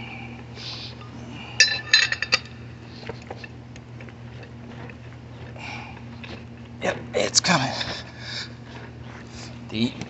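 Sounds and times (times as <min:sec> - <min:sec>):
wrench clinking on metal: 0:01.6 - 0:02.5.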